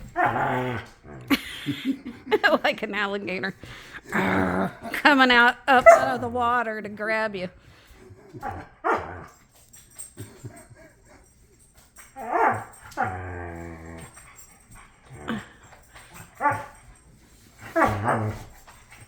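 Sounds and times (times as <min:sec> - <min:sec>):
dog barking: 0:05.8 - 0:06.2, 0:08.4 - 0:09.1.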